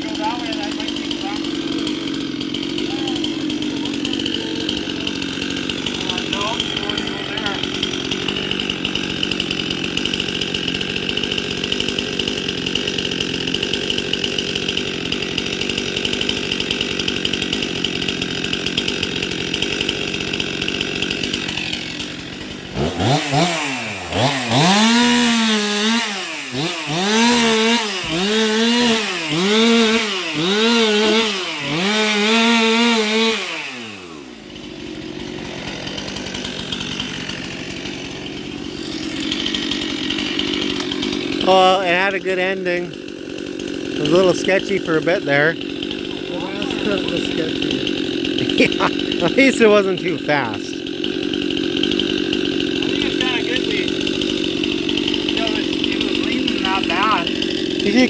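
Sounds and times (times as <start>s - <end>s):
chainsaw running and revving: 0.0s - 58.0s.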